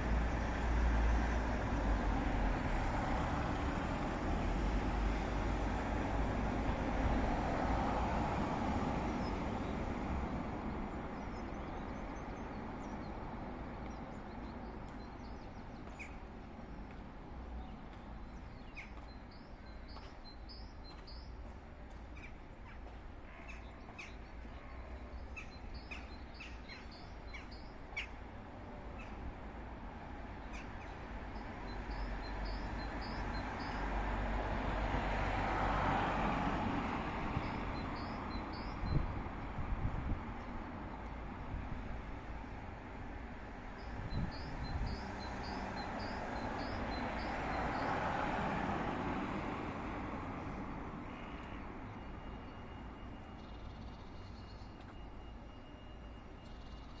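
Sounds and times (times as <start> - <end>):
street traffic hum: 0.0 - 57.0
small birds chirping: 10.8 - 29.3, 30.3 - 33.9
vehicle passing: 44.5 - 51.1.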